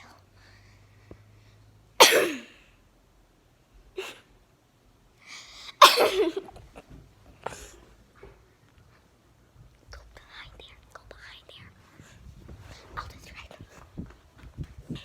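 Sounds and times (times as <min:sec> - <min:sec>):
person sneezing: 0:02.0 - 0:02.6, 0:04.0 - 0:04.3, 0:05.8 - 0:06.4.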